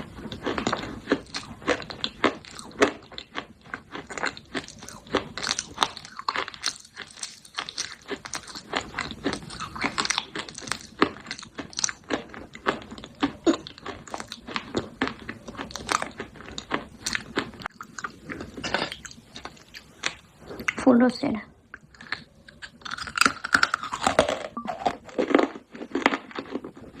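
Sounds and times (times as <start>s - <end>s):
crunching and chewing: 0.0s - 20.8s, 21.6s - 27.0s.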